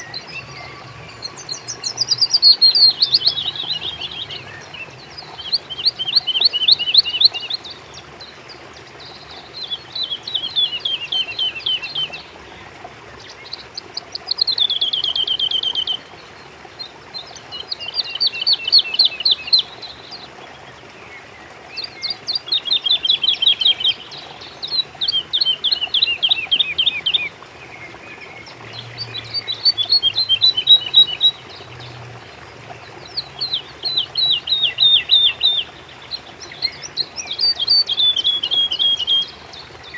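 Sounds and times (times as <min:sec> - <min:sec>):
songbird trilling: 0:00.0 - 0:07.6, 0:21.8 - 0:31.9, 0:32.7 - 0:39.9.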